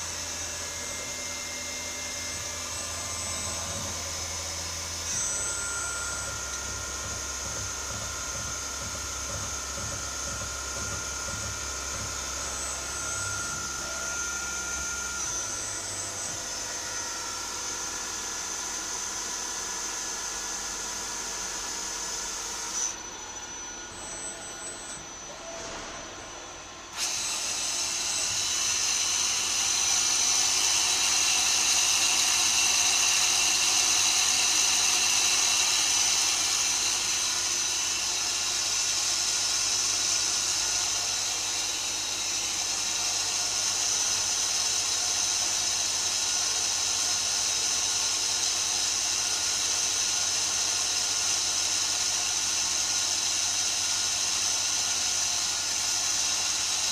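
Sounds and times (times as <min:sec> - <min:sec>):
lathe running with high whine: 0:00.0 - 0:56.9.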